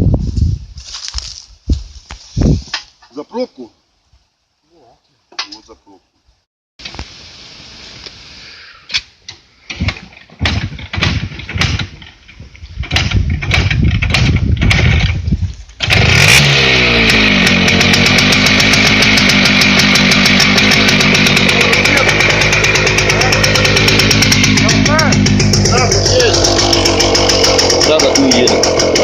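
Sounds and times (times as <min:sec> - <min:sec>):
small petrol engine starting: 0:15.8 - 0:29.0.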